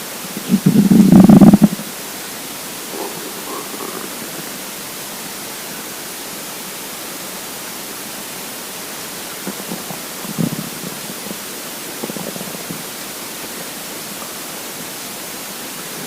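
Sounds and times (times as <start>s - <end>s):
steady hiss: 0.0s - 16.0s
stomach gurgling and rumbling: 0.2s - 1.9s, 2.8s - 4.6s, 9.5s - 13.0s.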